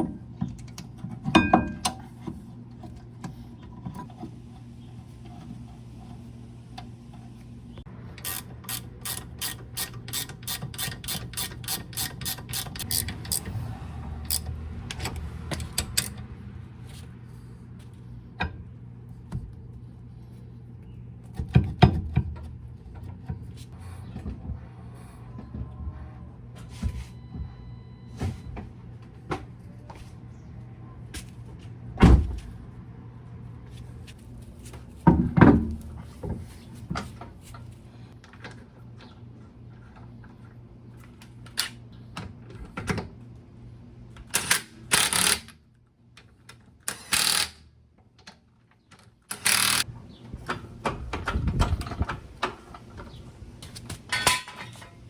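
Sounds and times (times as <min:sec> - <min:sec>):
metal tools clinking and knocking: 0:54.1 - 0:55.0.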